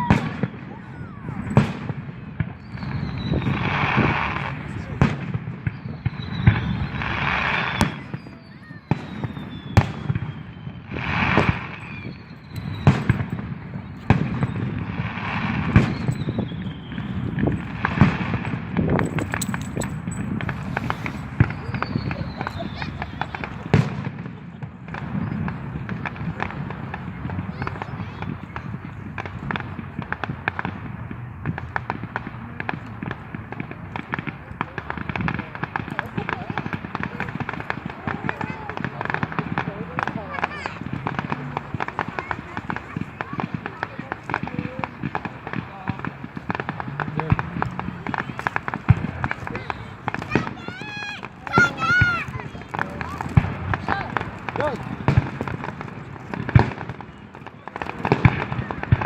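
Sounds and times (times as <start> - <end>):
firework bangs: 0.0 - 59.0
firework crackling hiss: 0.0 - 59.0
high falling firework whistle: 2.5 - 4.2, 5.7 - 13.2, 15.6 - 17.4.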